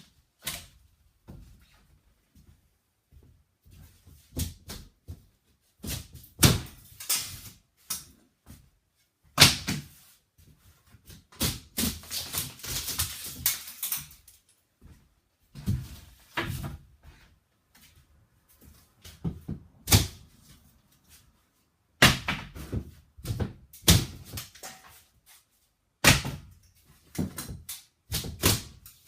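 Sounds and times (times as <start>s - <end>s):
drywall ripping and crunching: 11.4s - 14.3s
drywall pieces knocking: 22.0s - 25.0s.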